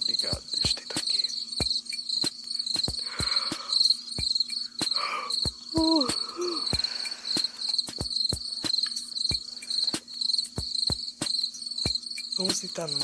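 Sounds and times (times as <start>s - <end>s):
crickets chirping: 0.0s - 13.0s
regular ticks: 0.0s - 13.0s.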